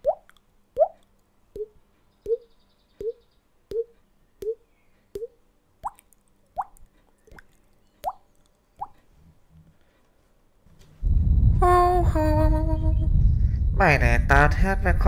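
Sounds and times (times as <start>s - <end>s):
mouth popping sounds: 0.0s - 4.6s, 5.2s - 9.0s.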